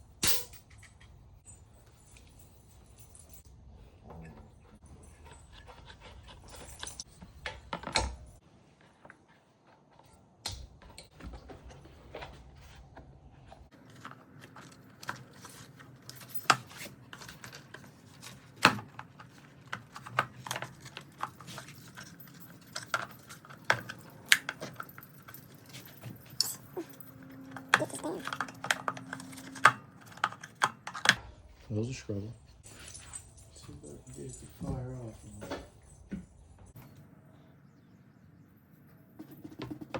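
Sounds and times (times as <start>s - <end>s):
hand tools clicking and clanking: 13.7s - 31.2s.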